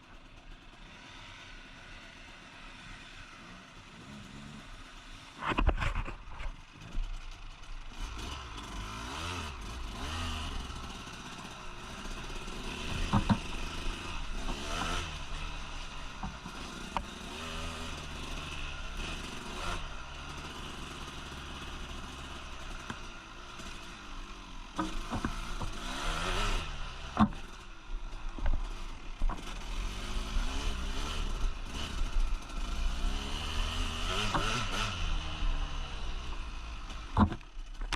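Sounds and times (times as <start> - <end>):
motorcycle engine revving: 0.0 - 37.9
sharp knocks and clatter: 12.0 - 17.2, 24.8 - 26.4, 27.1 - 27.6, 36.9 - 37.9.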